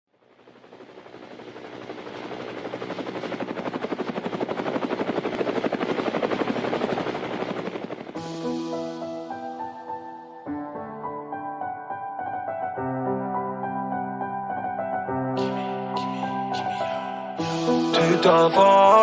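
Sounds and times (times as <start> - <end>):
piano music: 7.2 - 19.0.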